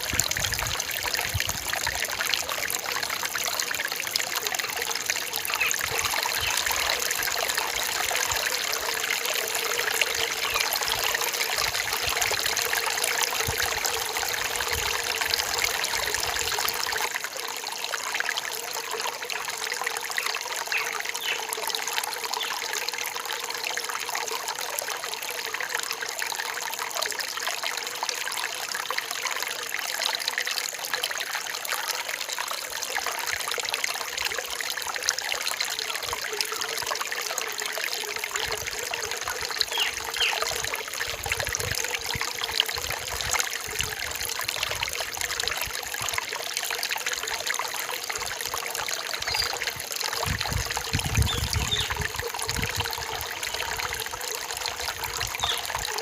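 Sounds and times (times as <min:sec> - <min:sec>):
stream trickling over rocks: 0:00.0 - 0:56.0.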